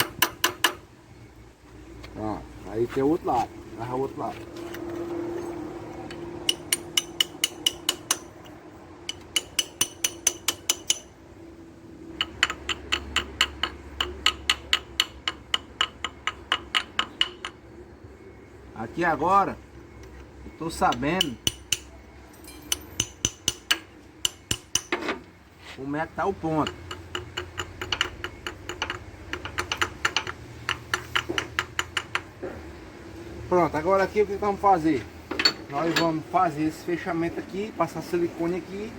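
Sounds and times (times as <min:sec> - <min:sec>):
ratchet wrench clicking: 0:06.5 - 0:08.5, 0:09.1 - 0:11.1, 0:22.5 - 0:24.9, 0:26.6 - 0:32.3.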